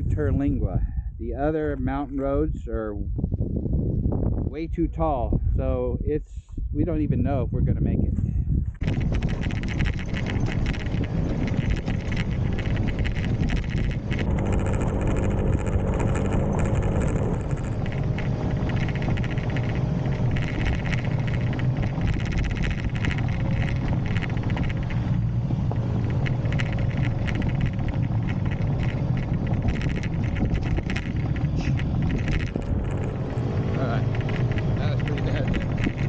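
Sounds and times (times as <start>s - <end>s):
bike rattles and jolts: 8.5s - 36.0s
motorbike engine running: 8.8s - 36.0s.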